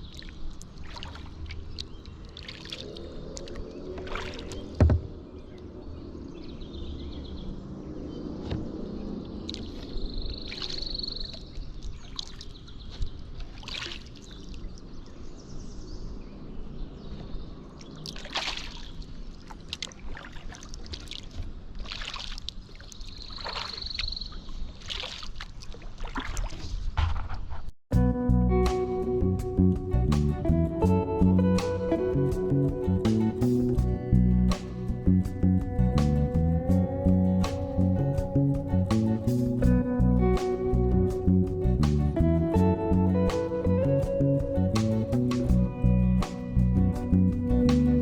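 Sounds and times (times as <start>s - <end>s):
water dripping: 0.0s - 4.8s
paddle splashing in water: 0.0s - 5.5s, 9.4s - 14.8s, 17.8s - 27.7s
paddle knocking on kayak: 4.7s - 5.2s.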